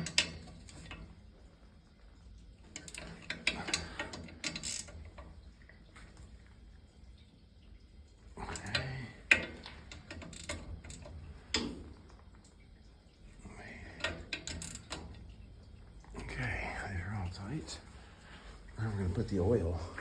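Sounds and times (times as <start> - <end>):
wrench clicking on metal bolts: 0.0 - 1.0, 2.8 - 5.0, 8.5 - 11.8, 14.0 - 15.1
low steady hum: 0.0 - 20.0.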